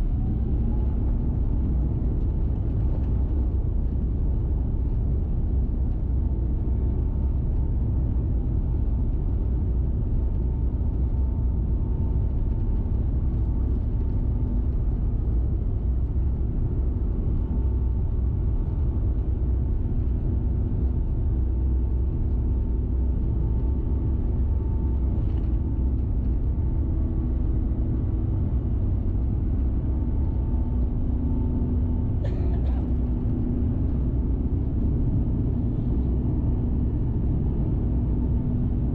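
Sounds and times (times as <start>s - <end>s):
aircraft cabin engine rumble: 0.0s - 38.9s
faint steady hums: 0.0s - 38.9s.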